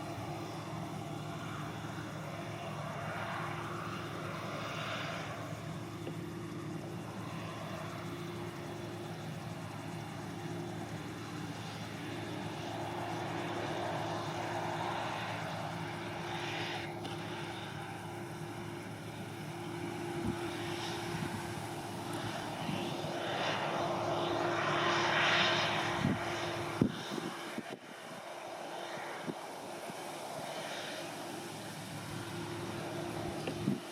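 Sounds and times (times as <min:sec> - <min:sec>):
combine harvester engine drone: 0:00.0 - 0:33.9.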